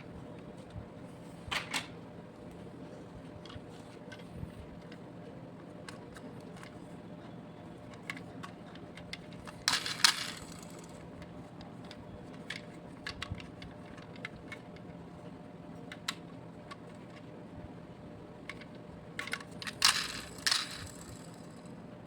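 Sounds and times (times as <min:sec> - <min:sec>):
steady low hum: 0:00.0 - 0:22.0
toy pieces clicking and tapping: 0:07.9 - 0:11.0, 0:18.5 - 0:21.7.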